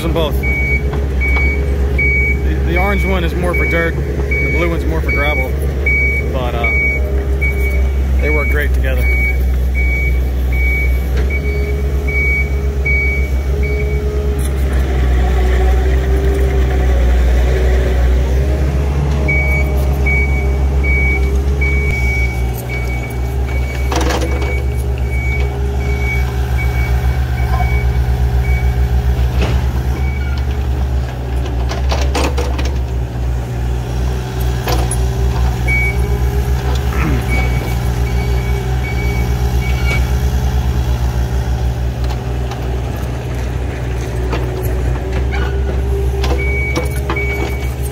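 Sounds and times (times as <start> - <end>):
diesel engines running: 0.0 - 47.9
back-up alarm beeping: 0.4 - 14.1, 19.3 - 28.9, 35.7 - 36.2, 37.0 - 40.2, 46.3 - 47.8.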